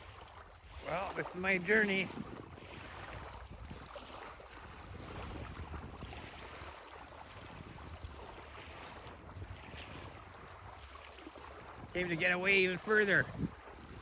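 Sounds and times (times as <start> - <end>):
lake water washing: 0.0 - 14.0
wind rumbling on microphone: 0.0 - 14.0.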